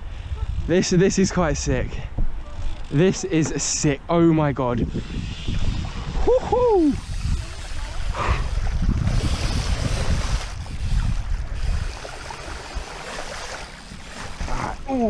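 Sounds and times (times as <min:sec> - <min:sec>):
wind buffeting microphone: 0:00.0 - 0:15.0
bike tyres splashing through water: 0:04.9 - 0:15.0
person whooping: 0:06.2 - 0:07.0.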